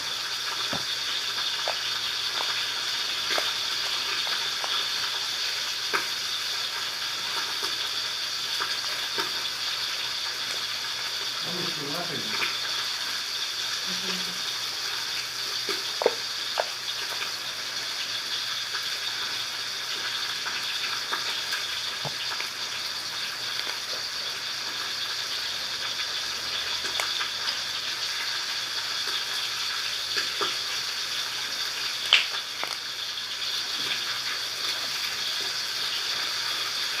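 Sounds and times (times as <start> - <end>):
sharp slime pops: 32.1 - 32.8.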